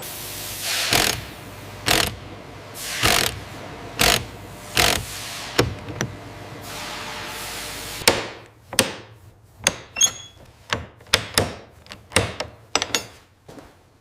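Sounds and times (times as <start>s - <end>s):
machine hum: 0.0s - 9.8s.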